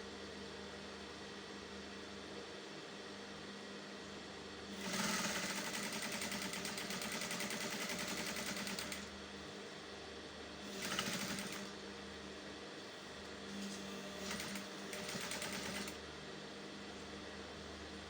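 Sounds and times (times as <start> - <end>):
sewing machine stitching: 4.8 - 9.1, 10.7 - 11.8, 13.6 - 16.0.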